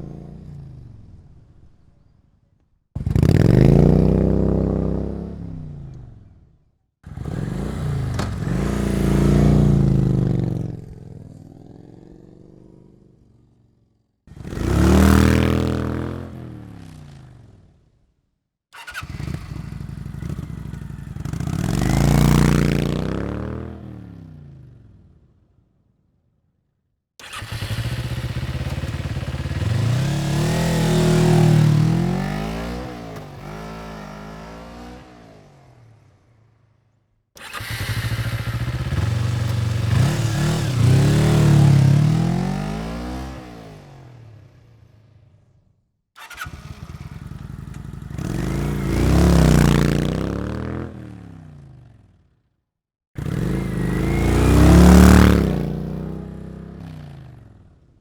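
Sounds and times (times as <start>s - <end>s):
motorcycle engine: 7.0s - 12.8s, 18.8s - 24.1s, 27.2s - 36.2s, 37.4s - 45.3s, 46.2s - 52.1s, 53.2s - 57.7s.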